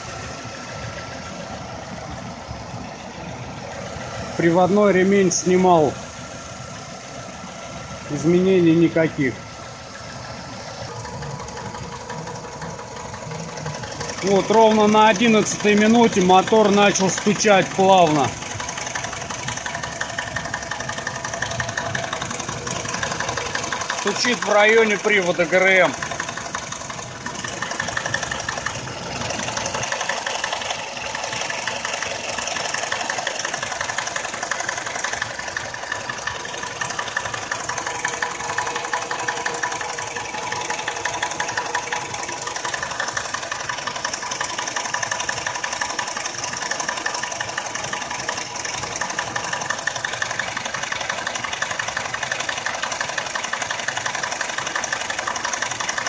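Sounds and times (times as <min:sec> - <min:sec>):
car engine idling: 0:00.0 - 0:56.0
rapid engine knock: 0:00.0 - 0:56.0.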